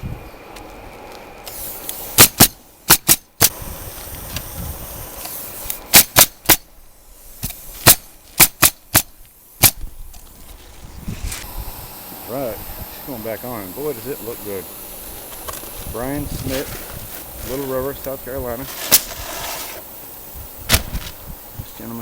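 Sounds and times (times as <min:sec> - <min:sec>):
nail gun shots into shingles: 0:02.2 - 0:03.6, 0:05.3 - 0:06.7, 0:07.4 - 0:09.8, 0:20.7 - 0:21.1.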